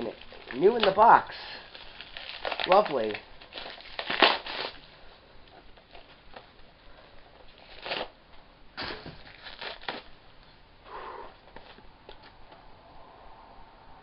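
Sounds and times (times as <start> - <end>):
packing material rustling: 0.0 - 8.2, 8.8 - 10.2.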